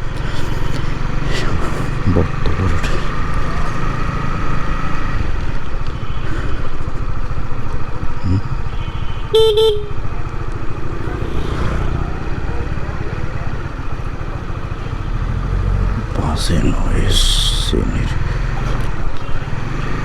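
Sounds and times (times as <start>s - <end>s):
motorcycle engine and road rumble: 0.0s - 20.0s
vehicle horn tooting: 8.6s - 10.4s.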